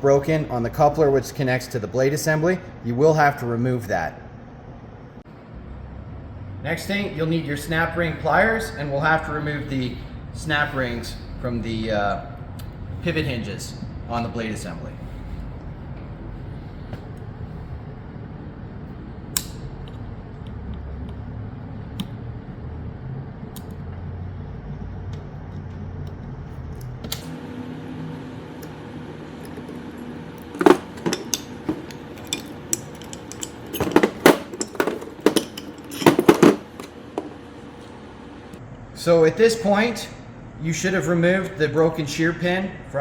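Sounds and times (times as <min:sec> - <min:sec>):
low steady hum: 0:00.0 - 0:43.0
steel parts and tools clinking: 0:29.4 - 0:37.4.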